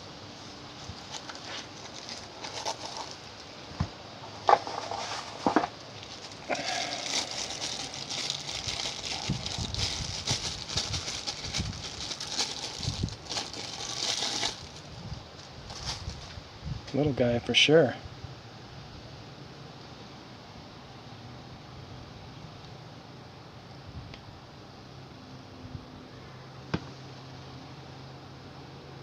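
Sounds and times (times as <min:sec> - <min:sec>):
packaging crinkling and rustling: 0:00.4 - 0:16.4.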